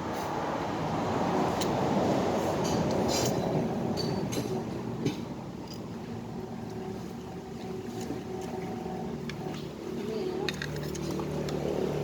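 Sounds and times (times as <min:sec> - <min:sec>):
low motor hum: 0:03.6 - 0:12.0.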